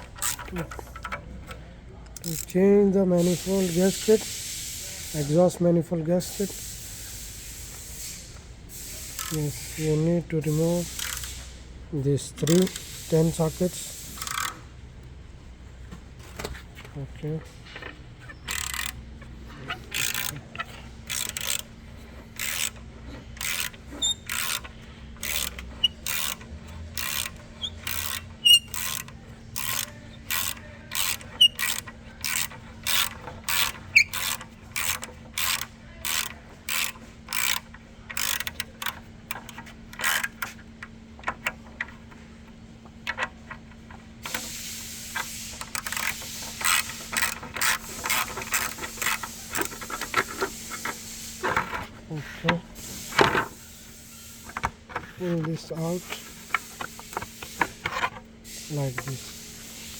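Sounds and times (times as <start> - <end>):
ratchet wrench clicking: 0.0 - 11.6, 12.2 - 14.7, 17.8 - 42.2, 42.9 - 51.9, 55.6 - 59.9.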